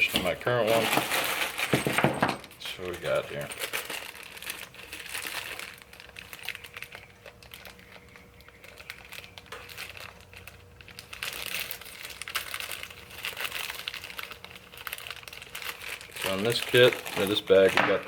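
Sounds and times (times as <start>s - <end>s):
plastic bag crinkling: 0.0s - 18.0s.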